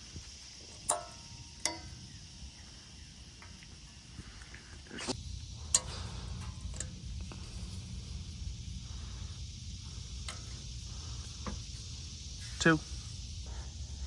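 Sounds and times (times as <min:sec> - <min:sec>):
high-pitched hiss: 0:00.0 - 0:14.0
metal clips clicking and snapping: 0:00.8 - 0:02.0.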